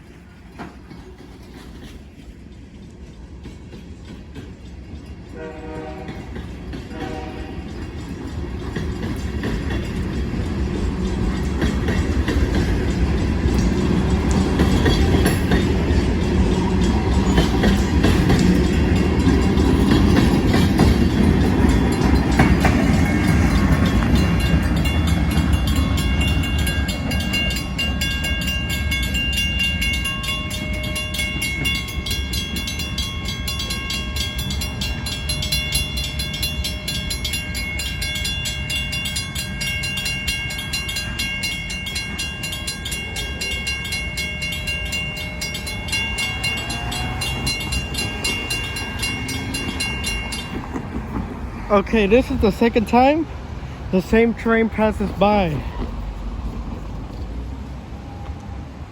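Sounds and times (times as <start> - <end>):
wheels clacking over rail joints: 0.0 - 58.4
freight train rumbling past: 0.0 - 58.9
high metallic ringing tones: 12.9 - 50.8.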